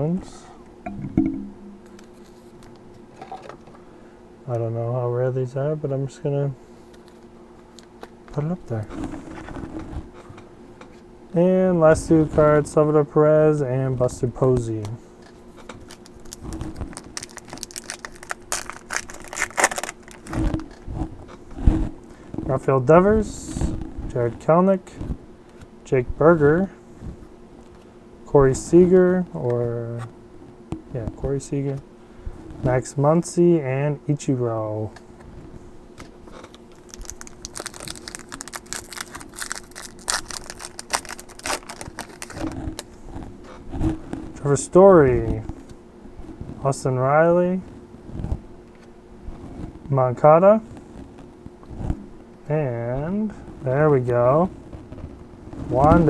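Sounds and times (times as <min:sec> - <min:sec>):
cards being handled: 0:15.8 - 0:20.6, 0:36.5 - 0:42.9
foil wrapper crinkling and tearing: 0:15.8 - 0:20.7, 0:36.5 - 0:43.0.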